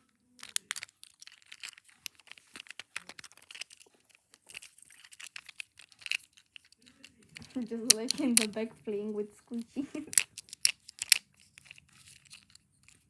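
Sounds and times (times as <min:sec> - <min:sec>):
scratchy rubbing: 0:00.4 - 0:08.6, 0:10.1 - 0:13.0
plastic buttons clicking: 0:07.3 - 0:08.6, 0:10.1 - 0:12.5.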